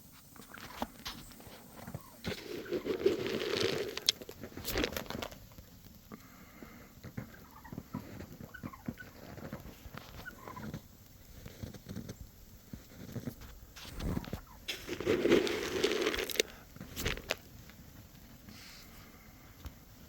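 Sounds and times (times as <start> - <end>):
soft crunches in snow: 0.1 - 5.9, 6.7 - 20.0
turkey clucks: 1.8 - 3.0, 7.2 - 10.8, 13.9 - 14.9.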